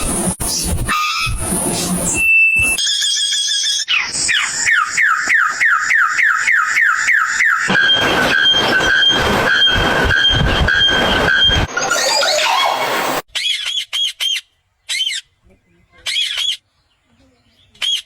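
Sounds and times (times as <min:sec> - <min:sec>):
pulsing high animal call: 0:00.9 - 0:13.6.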